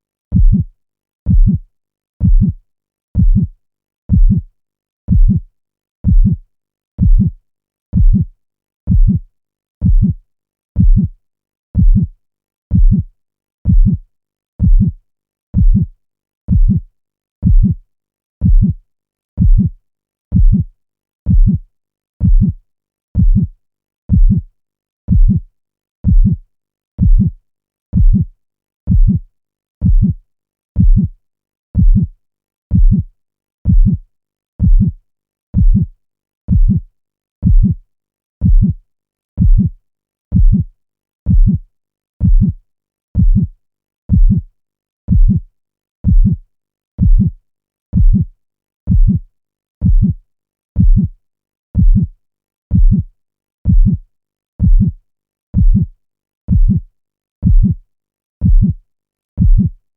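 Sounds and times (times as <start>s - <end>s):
heartbeat thumps: 0.3s - 0.7s, 1.3s - 1.6s, 2.2s - 2.6s, 3.2s - 3.5s, 4.1s - 4.4s, 5.1s - 5.4s, 6.0s - 6.4s, 7.0s - 7.3s, 8.0s - 8.2s, 8.9s - 9.2s, 9.8s - 10.2s, 10.8s - 11.1s, 11.8s - 12.1s, 12.7s - 13.0s, 13.7s - 14.0s, 14.6s - 15.0s, 15.6s - 15.9s, 16.5s - 16.8s, 17.4s - 17.8s, 18.4s - 18.8s, 19.4s - 19.7s, 20.3s - 20.6s, 21.3s - 21.6s, 22.2s - 22.6s, 23.2s - 23.5s, 24.1s - 24.4s, 25.1s - 25.4s, 26.0s - 26.4s, 27.0s - 27.3s, 28.0s - 28.2s, 28.9s - 29.2s, 29.8s - 30.2s, 30.8s - 31.1s, 31.8s - 32.1s, 32.7s - 33.1s, 33.7s - 34.0s, 34.6s - 35.0s, 35.6s - 35.9s, 36.5s - 36.8s, 37.4s - 37.8s, 38.4s - 38.7s, 39.4s - 39.7s, 40.3s - 40.6s, 41.3s - 41.6s, 42.2s - 42.6s, 43.2s - 43.5s, 44.1s - 44.4s, 45.1s - 45.4s, 46.0s - 46.4s, 47.0s - 47.3s, 48.0s - 48.2s, 48.9s - 49.2s, 49.8s - 50.1s, 50.8s - 51.1s, 51.8s - 52.1s, 52.7s - 53.0s, 53.7s - 54.0s, 54.6s - 54.9s, 55.6s - 55.8s, 56.5s - 56.8s, 57.4s - 57.8s, 58.4s - 58.7s, 59.4s - 59.7s.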